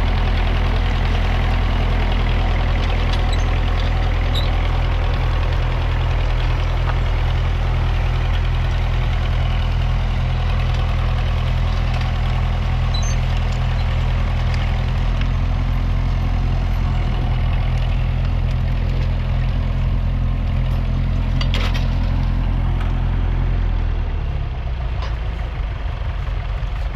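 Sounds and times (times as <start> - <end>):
tractor diesel engine running: 0.0 - 26.9.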